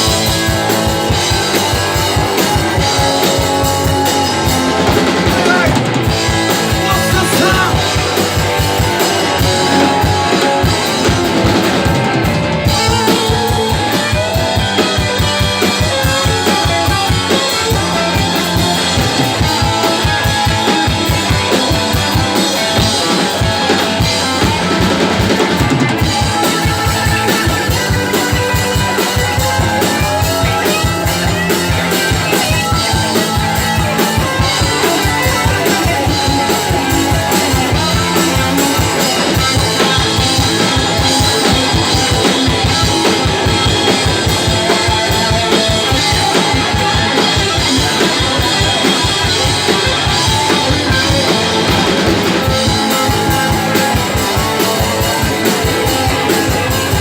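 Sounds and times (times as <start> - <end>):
electric guitar: 0.0 - 57.0
fast driving drum beat: 0.0 - 57.0.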